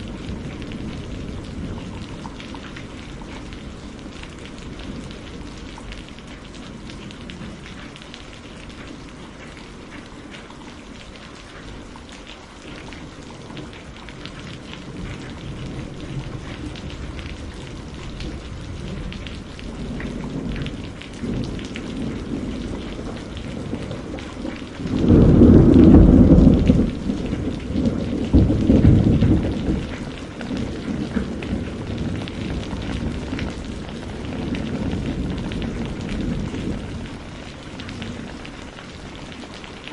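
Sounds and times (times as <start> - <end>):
rain pattering: 0.0 - 39.9
thunder rolling: 14.8 - 38.5.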